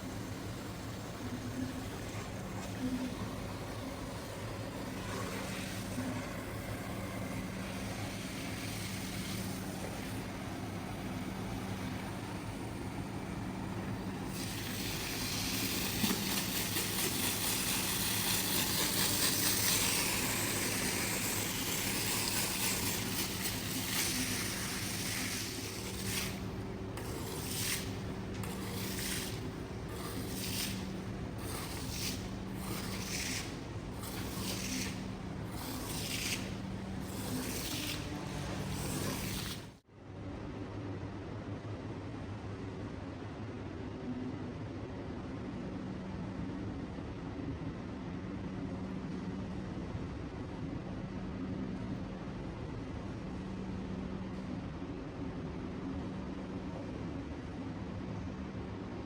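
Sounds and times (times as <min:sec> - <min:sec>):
machine hum: 0:00.0 - 0:39.8
hiss: 0:14.2 - 0:39.8
rhythmic scraping strokes: 0:16.3 - 0:39.8.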